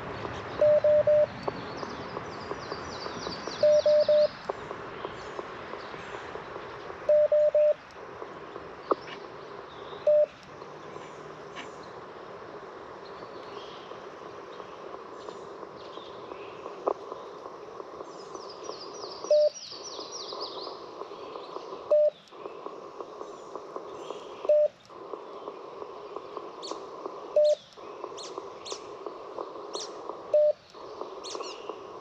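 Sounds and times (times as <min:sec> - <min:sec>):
faint birdsong: 0:00.0 - 0:32.0
morse code dits: 0:00.6 - 0:01.3, 0:03.6 - 0:04.4, 0:07.0 - 0:07.8, 0:10.0 - 0:10.4, 0:19.3 - 0:19.6, 0:21.9 - 0:22.2, 0:24.5 - 0:24.8, 0:27.3 - 0:27.6, 0:30.2 - 0:30.6.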